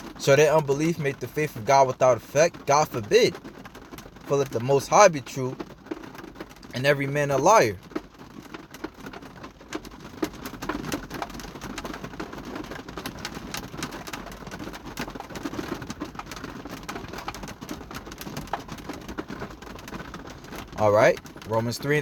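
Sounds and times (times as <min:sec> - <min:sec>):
steady rain hiss: 0:00.0 - 0:07.8, 0:19.2 - 0:22.0
rain tapping on a surface: 0:00.0 - 0:22.0.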